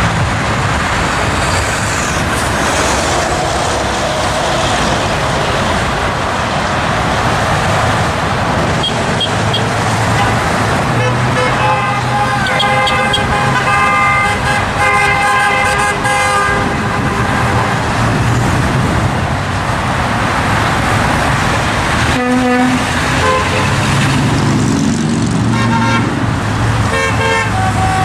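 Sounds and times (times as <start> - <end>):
highway traffic roar: 0.0 - 28.0
vehicle horns honking: 8.8 - 18.0, 22.1 - 23.9, 25.5 - 26.2, 26.9 - 28.0.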